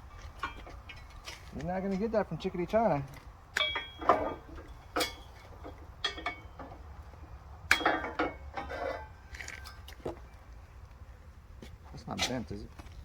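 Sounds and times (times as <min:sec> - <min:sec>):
steel parts clanking together: 0:03.6 - 0:06.8, 0:07.7 - 0:10.0.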